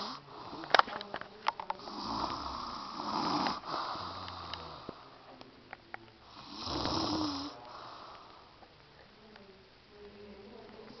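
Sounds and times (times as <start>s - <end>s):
woman snoring: 0.0s - 0.6s, 1.8s - 4.8s, 6.4s - 7.6s.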